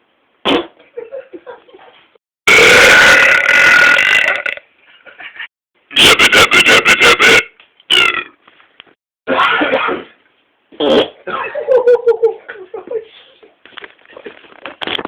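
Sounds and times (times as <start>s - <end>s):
person belching: 2.5s - 4.6s, 6.0s - 8.4s.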